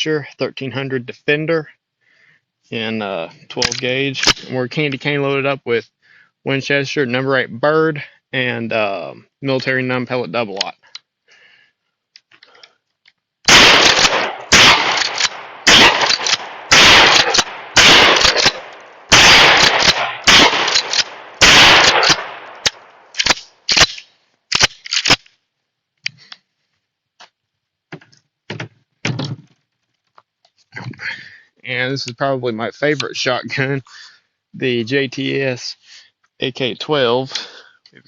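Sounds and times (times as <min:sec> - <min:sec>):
shotgun shots: 0:13.5 - 0:25.2.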